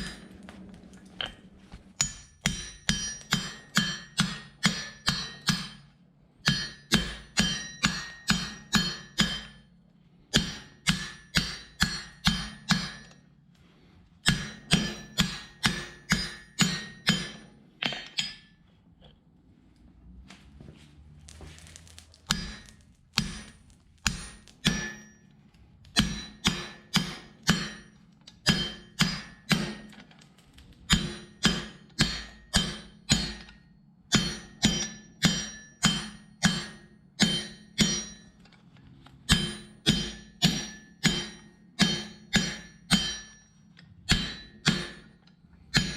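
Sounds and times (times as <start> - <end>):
hammer ringing on anvil: 2.0 - 5.8, 6.4 - 9.7, 10.3 - 13.3, 14.2 - 18.5, 22.3 - 23.5, 24.1 - 25.3, 26.0 - 29.9, 30.9 - 38.4, 39.3 - 45.9.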